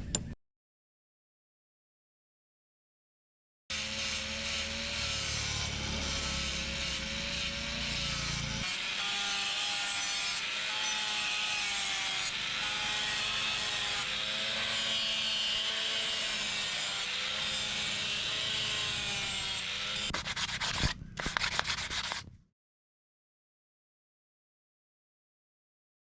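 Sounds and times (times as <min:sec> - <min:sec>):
abrasive sanding with squealing: 0:03.7 - 0:22.2.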